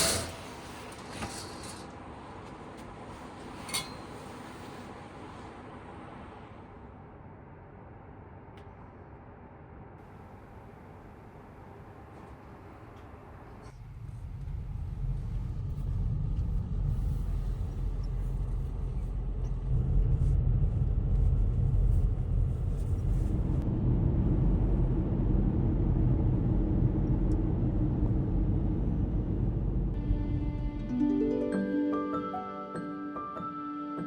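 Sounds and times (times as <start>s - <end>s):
vehicle low rumble: 0.0s - 31.1s
mid-low drone: 13.7s - 31.8s.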